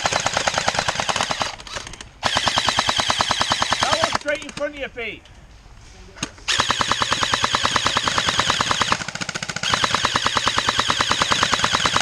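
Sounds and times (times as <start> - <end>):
airsoft gun firing full-auto: 0.0 - 1.6, 2.2 - 4.2, 6.5 - 12.0.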